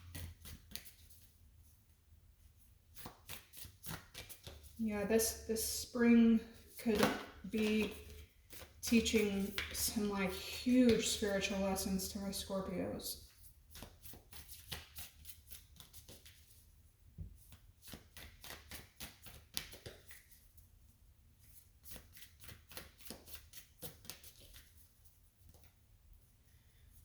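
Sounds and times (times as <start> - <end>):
cards being shuffled: 0.0 - 1.3, 2.9 - 4.8, 6.8 - 10.0, 13.7 - 16.5, 17.5 - 20.4, 21.8 - 25.7.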